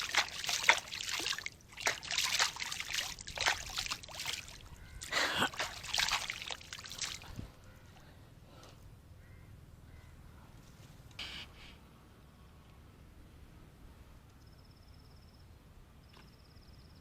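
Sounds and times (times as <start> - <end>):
water splashing and trickling: 0.0 - 7.6.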